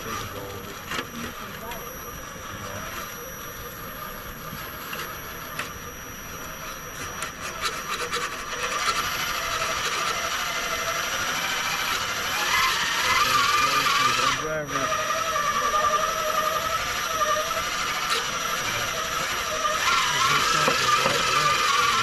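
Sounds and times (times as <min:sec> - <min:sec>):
rc truck motor and gears whining: 0:00.0 - 0:22.0
tyres scraping on rock: 0:06.7 - 0:22.0.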